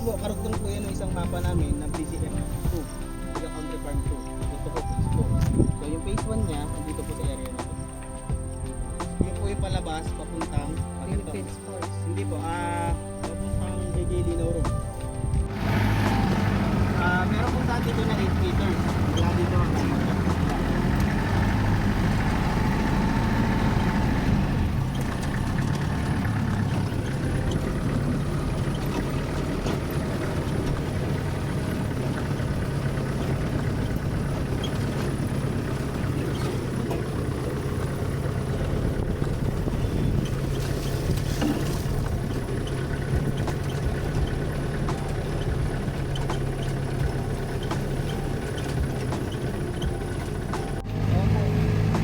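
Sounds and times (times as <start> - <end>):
road noise: 0.0 - 52.0
vehicle engine humming: 0.0 - 52.0
wind noise: 4.0 - 9.9, 38.2 - 45.9.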